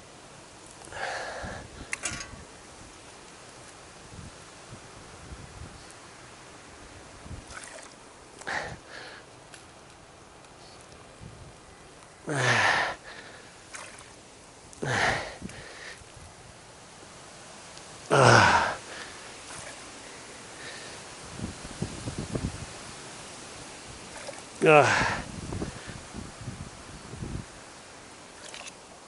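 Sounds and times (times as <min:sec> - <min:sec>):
water splashing and gurgling: 0:07.4 - 0:08.0, 0:13.7 - 0:14.2, 0:19.4 - 0:20.0, 0:24.0 - 0:25.2, 0:28.3 - 0:28.8.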